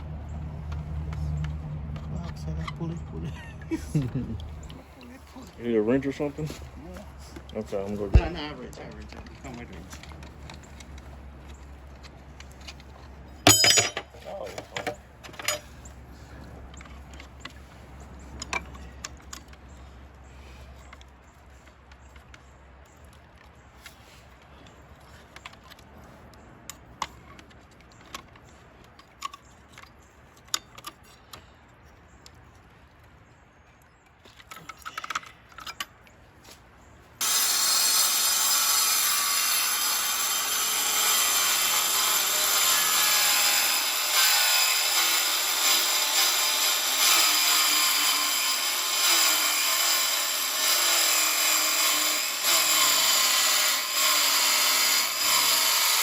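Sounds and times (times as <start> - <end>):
power tool cutting: 37.2 - 56.0.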